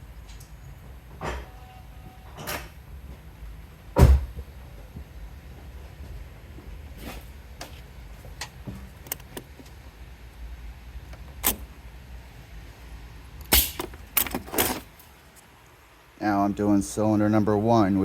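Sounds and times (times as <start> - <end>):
tools clicking and knocking: 8.4 - 9.7, 11.1 - 11.7, 13.4 - 15.0.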